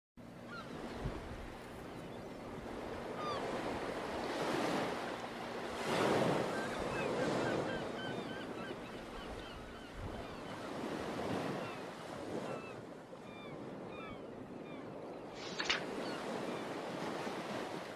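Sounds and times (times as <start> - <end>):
short high bird calls: 15.3 - 16.4.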